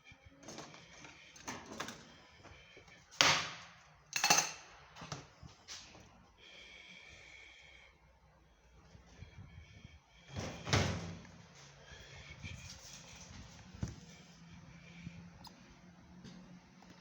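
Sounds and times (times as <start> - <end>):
washing machine parts clattering: 4.1 - 5.2
steady high whir: 11.8 - 17.0.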